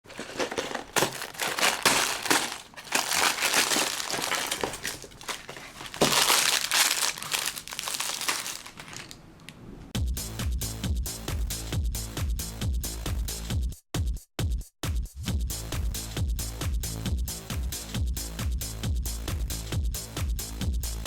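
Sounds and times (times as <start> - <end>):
packaging crinkling and rustling: 0.0 - 9.2.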